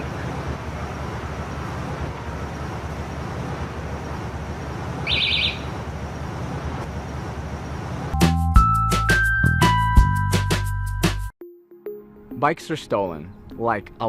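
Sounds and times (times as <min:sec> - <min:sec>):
street traffic noise: 0:00.0 - 0:09.4
rapid high chirps: 0:05.0 - 0:05.8.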